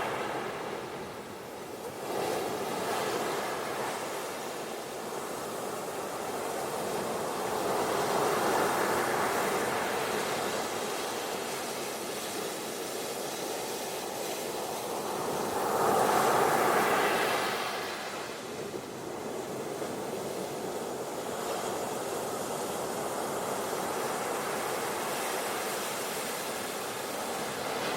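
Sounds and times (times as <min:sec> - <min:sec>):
ocean waves washing onto beach: 0:00.0 - 0:27.9.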